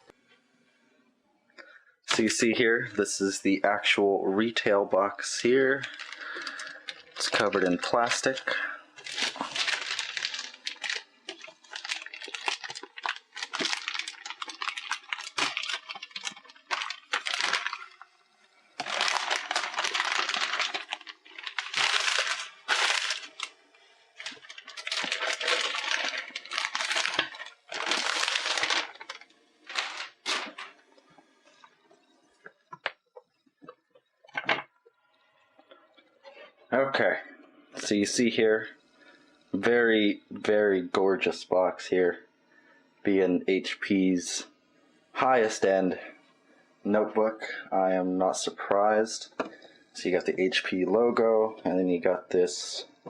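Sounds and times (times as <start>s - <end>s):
plastic shrink-wrap crackling: 5.2s - 31.8s.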